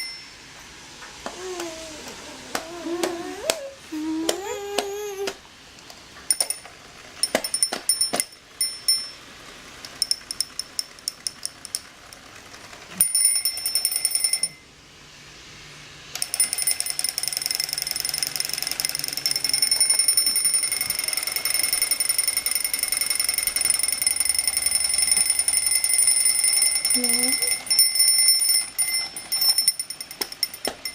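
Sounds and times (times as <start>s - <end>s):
alarm clock ringing: 0.0s - 0.4s, 6.3s - 9.3s, 13.0s - 14.7s, 16.2s - 30.9s.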